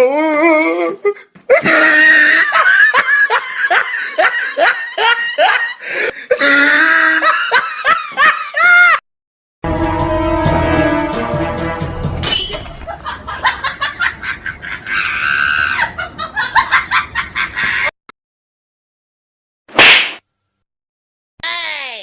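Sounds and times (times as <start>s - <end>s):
comedy laughter: 1.5s - 9.0s, 12.8s - 17.9s.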